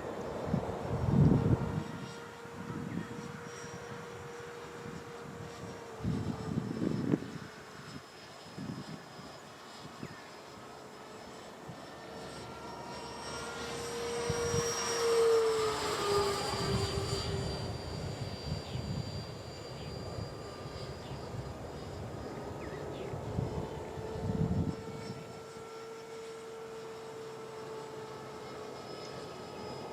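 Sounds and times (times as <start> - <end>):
model jet fan whine: 0.0 - 29.9.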